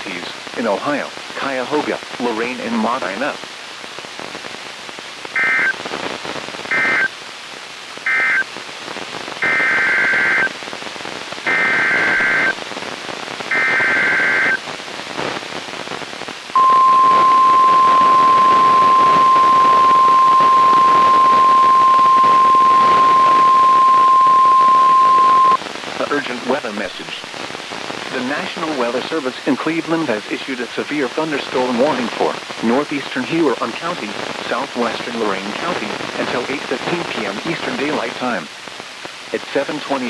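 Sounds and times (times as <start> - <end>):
steady radio hiss: 0.0 - 40.0
digital data bursts: 5.4 - 5.8, 6.7 - 7.1, 9.4 - 10.5, 11.5 - 12.6, 13.5 - 14.6, 16.6 - 25.6
loud steady alarm tone: 5.4 - 5.8, 6.7 - 7.1, 8.1 - 8.4, 9.4 - 10.5, 11.5 - 12.6, 13.5 - 14.6, 16.6 - 25.6.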